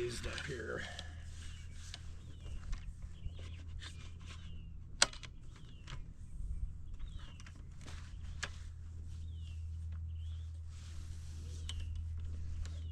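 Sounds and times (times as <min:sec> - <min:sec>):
halyard clicks: 0:00.0 - 0:01.2, 0:04.9 - 0:06.1
wind rumbling on microphone: 0:05.4 - 0:12.9.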